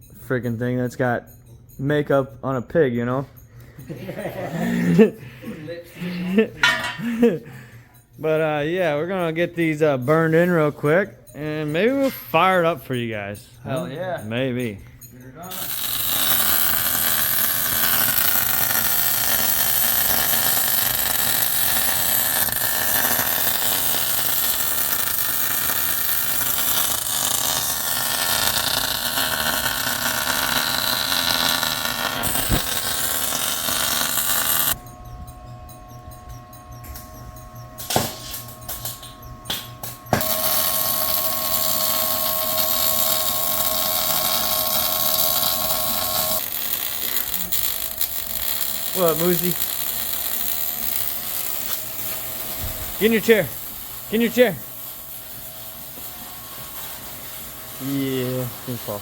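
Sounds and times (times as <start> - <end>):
steady hum: 4.8 - 58.7
welding arc crackling: 15.5 - 34.9, 37.7 - 59.0.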